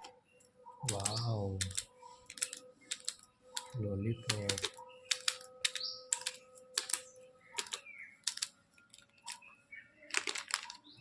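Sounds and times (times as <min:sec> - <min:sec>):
sharp clicks and taps: 0:00.9 - 0:07.0
plastic packaging crinkling: 0:10.1 - 0:10.8.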